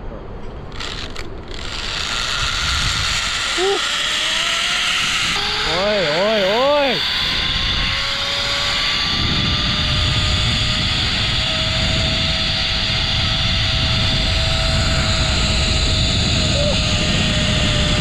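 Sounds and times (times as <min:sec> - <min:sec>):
zipline pulleys whining on cable: 0:00.6 - 0:18.0
wind on microphone: 0:00.7 - 0:18.0.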